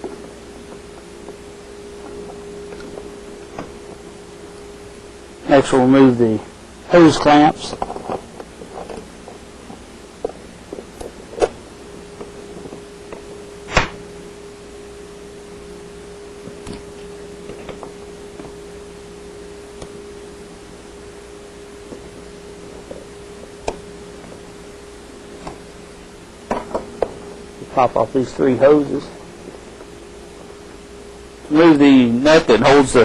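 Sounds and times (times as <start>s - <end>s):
steady hum: 0.0s - 33.0s.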